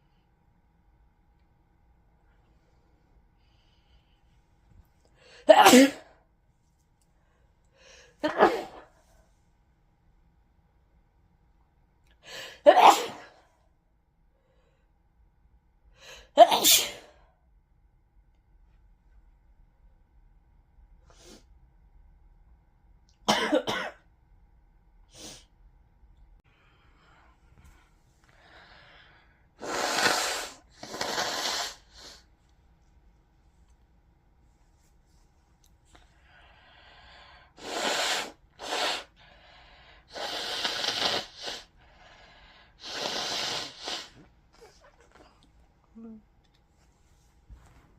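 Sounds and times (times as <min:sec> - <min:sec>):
person breathing: 0:02.6 - 0:04.5, 0:26.4 - 0:31.0, 0:35.9 - 0:40.7, 0:41.6 - 0:44.1
person coughing: 0:05.5 - 0:06.1, 0:08.2 - 0:08.9, 0:23.3 - 0:24.0
person blowing nose: 0:29.6 - 0:32.3, 0:37.6 - 0:39.2, 0:40.1 - 0:41.8, 0:42.8 - 0:44.3.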